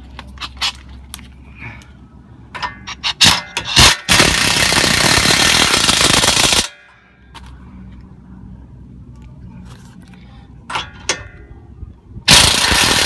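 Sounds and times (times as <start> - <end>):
air impact wrench hammering: 2.6 - 6.8, 12.3 - 13.0.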